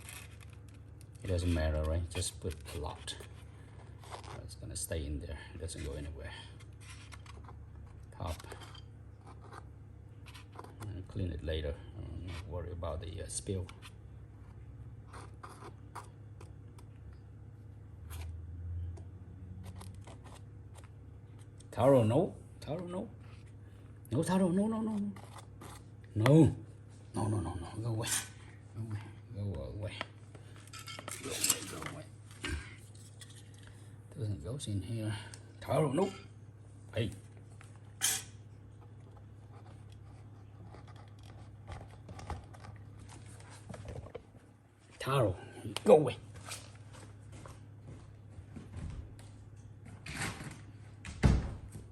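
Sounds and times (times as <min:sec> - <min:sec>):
low steady hum: 0:00.0 - 0:51.9.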